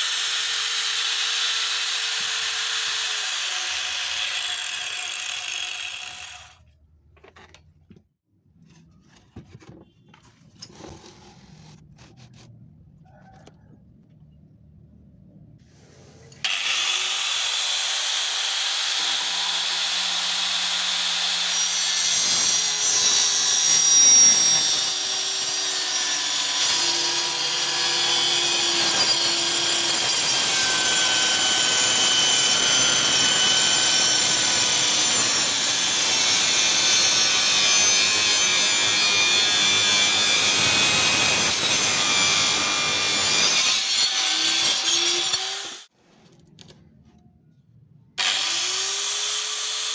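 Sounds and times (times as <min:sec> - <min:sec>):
angle grinder cutting wood: 0:00.0 - 0:06.7, 0:16.4 - 0:45.9, 0:48.2 - 0:49.9.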